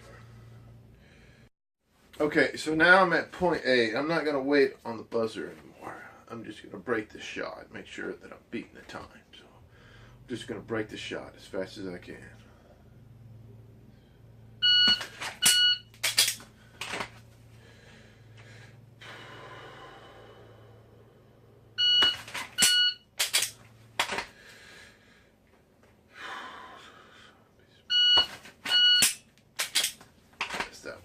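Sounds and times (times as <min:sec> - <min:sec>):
shot timer beeps: 0:14.6 - 0:15.9, 0:21.8 - 0:23.1, 0:27.9 - 0:29.2.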